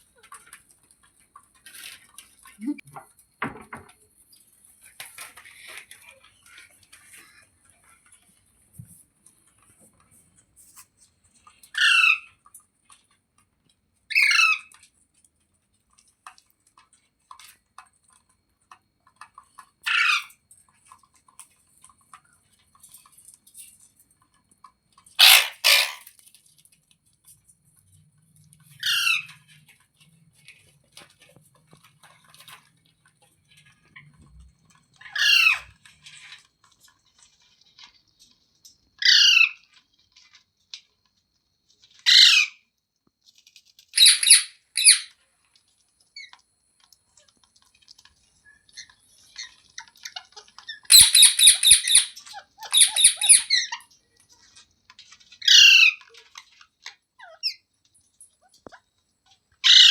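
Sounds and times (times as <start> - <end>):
parrot calling loudly: 11.8 - 12.3, 14.1 - 14.7, 25.2 - 26.1, 28.8 - 29.3, 35.1 - 35.7, 39.0 - 39.6, 42.0 - 42.6, 44.0 - 45.1, 50.1 - 53.8, 55.4 - 56.0, 59.6 - 59.9.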